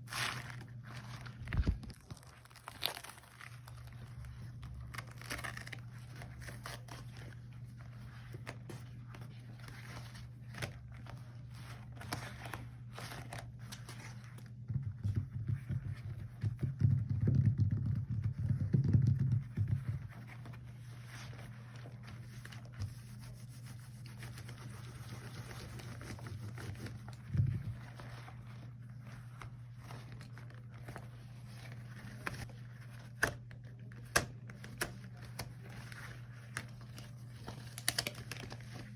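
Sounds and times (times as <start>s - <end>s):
rubber gloves rubbing: 17.8s - 33.0s.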